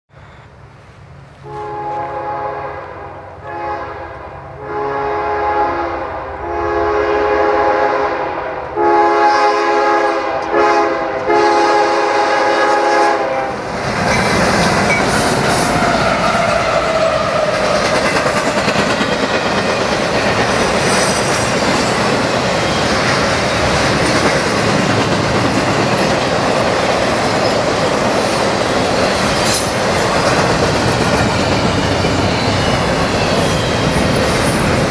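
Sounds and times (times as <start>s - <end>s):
train wheels on rail: 0.1s - 5.6s, 10.1s - 34.9s
train air horn blasts: 1.4s - 13.7s
clickety-clack over rail joints: 13.7s - 34.9s.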